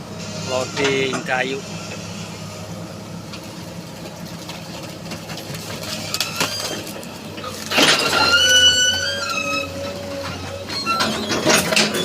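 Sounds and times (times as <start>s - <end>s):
excavator engine hum: 0.0s - 12.0s
loud squeal: 7.9s - 12.0s.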